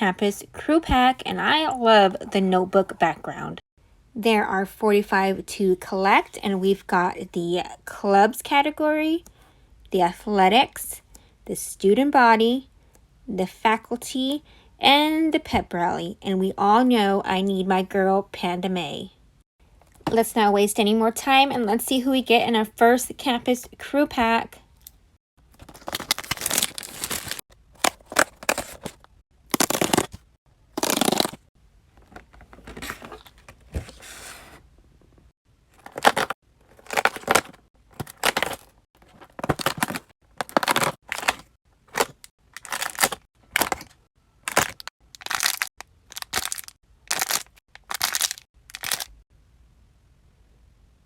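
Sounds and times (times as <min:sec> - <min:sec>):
packaging being torn open: 0:25.6 - 0:30.2, 0:30.8 - 0:31.4, 0:44.5 - 0:49.1.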